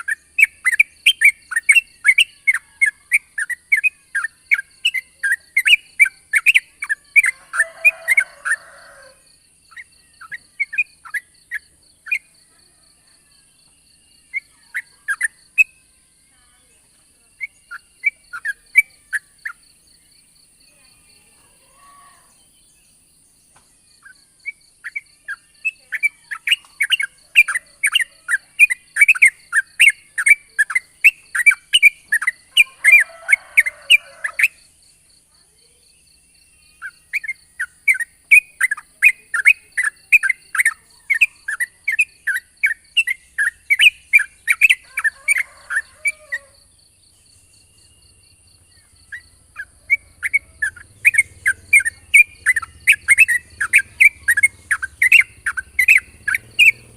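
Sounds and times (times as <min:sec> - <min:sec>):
bird singing rapid sharp notes: 0:47.2 - 0:56.9.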